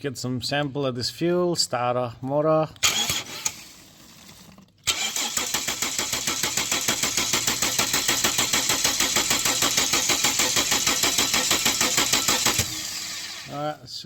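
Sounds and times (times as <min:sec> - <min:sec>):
car engine cranking: 0:02.8 - 0:03.9, 0:04.8 - 0:13.5.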